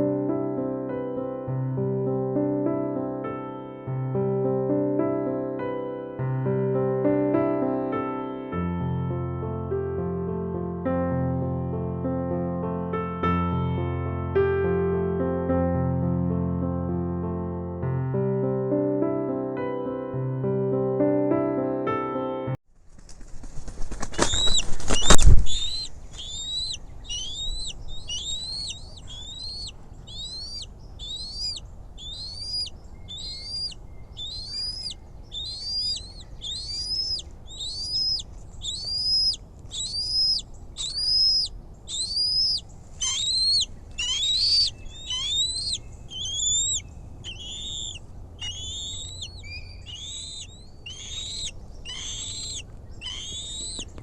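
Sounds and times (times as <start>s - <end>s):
eagle whistled chirps: 24.2s - 53.9s.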